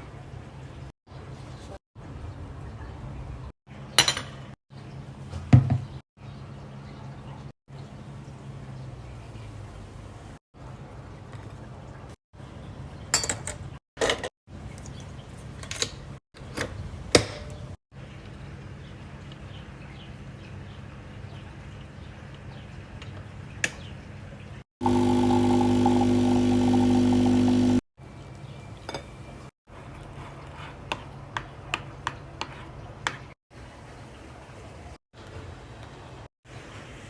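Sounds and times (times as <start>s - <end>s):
small electric kitchen appliance running: 24.8s - 27.8s.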